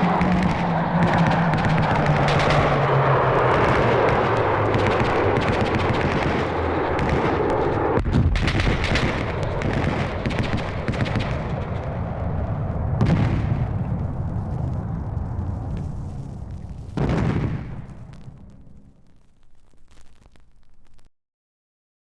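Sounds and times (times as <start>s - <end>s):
low drone: 0.0s - 8.0s, 8.7s - 19.9s
machine-gun and rifle fire: 0.0s - 11.8s
heavy blast: 0.0s - 21.0s.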